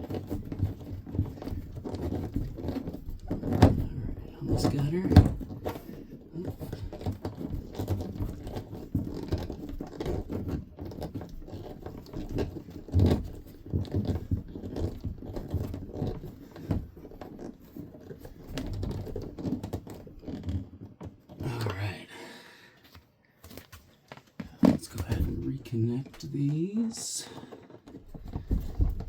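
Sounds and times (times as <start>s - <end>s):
screwdriver scraping and knocking: 0.0s - 21.4s.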